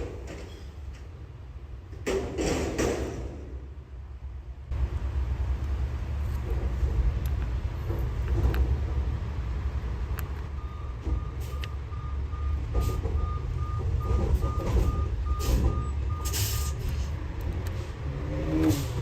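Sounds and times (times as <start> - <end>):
heavy traffic rumble: 0.0 - 19.0
truck engine: 0.0 - 19.0
reversing alarm beeping: 10.5 - 16.8.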